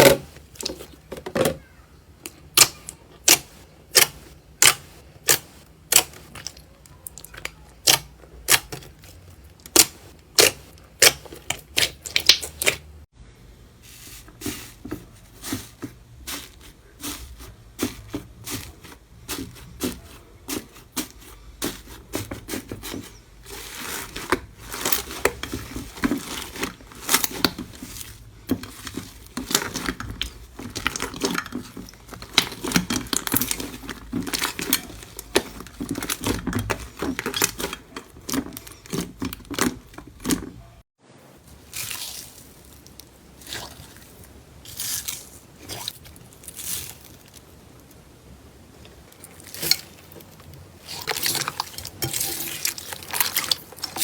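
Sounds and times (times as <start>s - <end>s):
slime popping and crackling: 9.6s - 12.8s.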